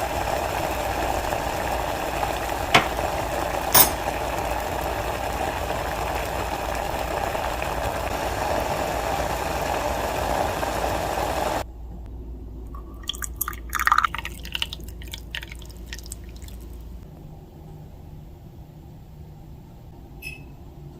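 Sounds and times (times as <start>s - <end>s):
tea bubbling on heat: 0.0s - 11.6s, 12.8s - 16.8s
light clinks: 3.8s - 4.1s
liquid pouring and dripping: 12.8s - 16.8s.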